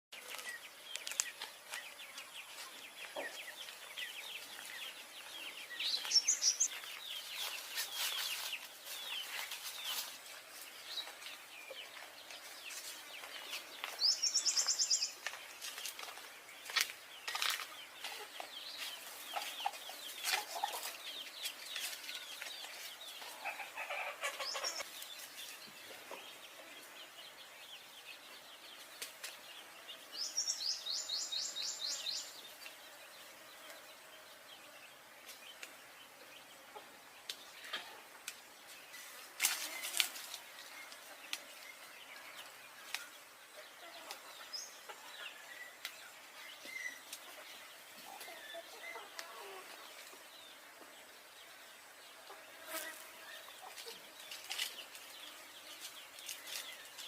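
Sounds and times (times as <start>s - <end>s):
birds trilling: 23.0s - 25.0s.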